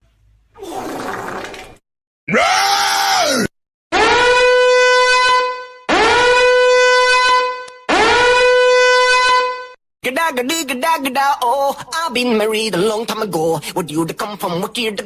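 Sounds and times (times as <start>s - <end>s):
brassy horn blast: 4.0s - 9.8s.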